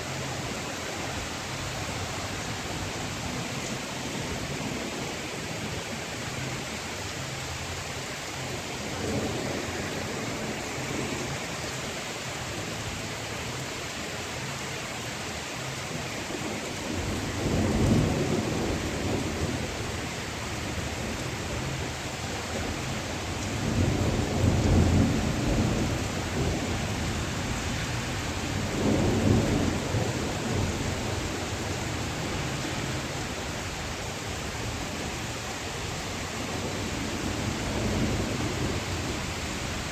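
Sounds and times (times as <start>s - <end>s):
steady rain: 0.0s - 39.9s
thunder rumbling: 16.8s - 35.1s, 35.9s - 39.9s.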